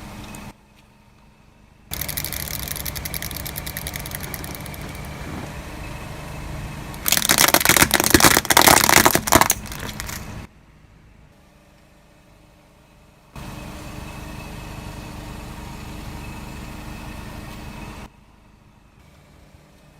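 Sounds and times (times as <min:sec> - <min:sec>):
harsh crackling: 0:01.9 - 0:05.6, 0:07.0 - 0:10.3
bulldozer engine clattering: 0:01.9 - 0:06.2, 0:06.9 - 0:10.5.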